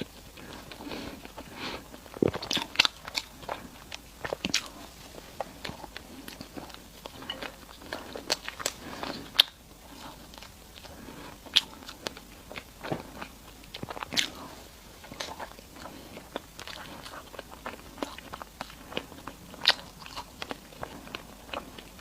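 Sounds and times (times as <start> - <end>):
wet mouth noises: 0.0 - 7.2
person chewing food: 0.0 - 22.0.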